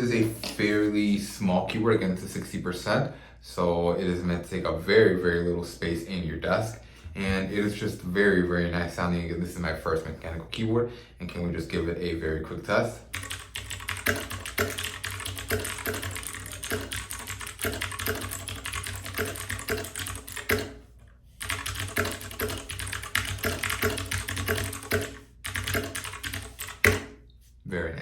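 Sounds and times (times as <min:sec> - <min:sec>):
clicky mechanical keyboard typing: 0:13.1 - 0:20.8, 0:21.4 - 0:27.1.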